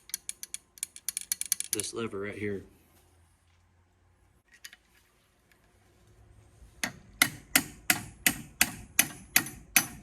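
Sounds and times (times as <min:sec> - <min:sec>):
hammer tapping metal punch: 0:06.8 - 0:10.0.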